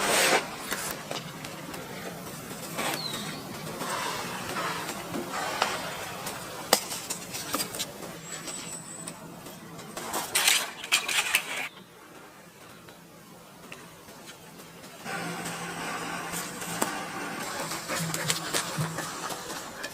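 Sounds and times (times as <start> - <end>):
rustling and scraping: 0.0 - 11.7, 14.1 - 19.9.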